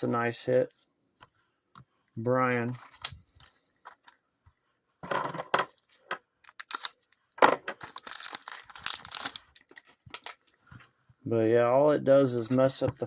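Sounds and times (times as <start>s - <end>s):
trading cards rustling and clicking: 5.3s - 10.6s.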